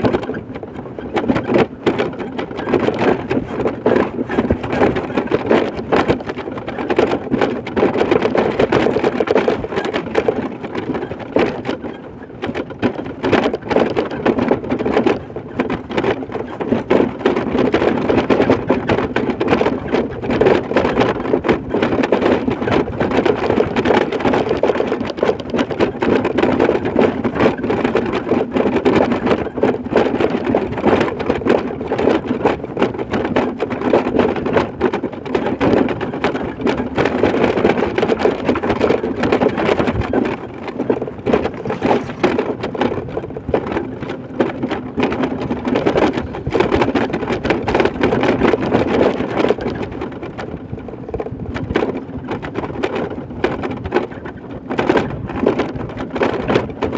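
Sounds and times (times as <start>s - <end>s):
vehicle engine and road noise: 40.8s - 43.0s.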